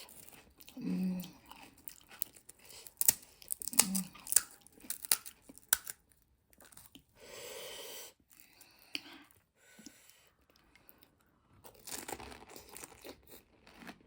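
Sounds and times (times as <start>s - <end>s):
crunching crisp shells: 1.4s - 7.0s, 11.7s - 14.0s.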